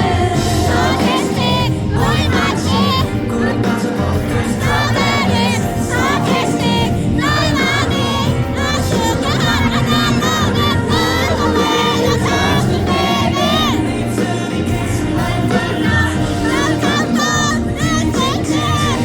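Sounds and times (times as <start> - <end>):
crowd singing along: 0.0 - 19.0
live pop song over pa: 0.0 - 19.0
crowd shrieking: 4.6 - 14.0.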